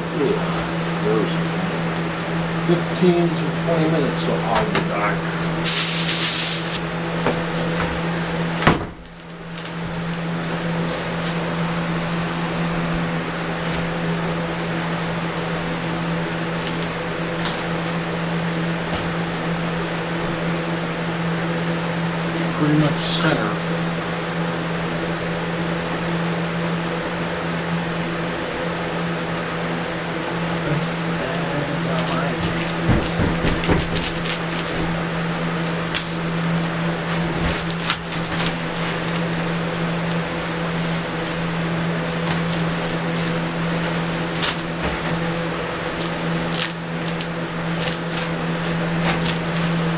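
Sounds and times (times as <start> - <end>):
low machine hum: 0.0 - 49.9
handling rustles and knocks: 31.9 - 49.9.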